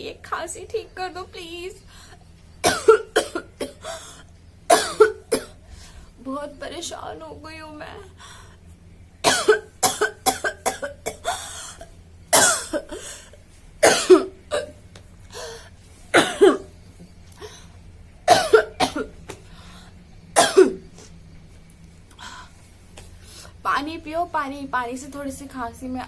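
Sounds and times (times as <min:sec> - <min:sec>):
woman coughing: 0:02.6 - 0:04.0, 0:04.7 - 0:05.6, 0:09.2 - 0:13.1, 0:13.8 - 0:14.8, 0:16.1 - 0:16.7, 0:18.3 - 0:19.1, 0:20.4 - 0:20.8.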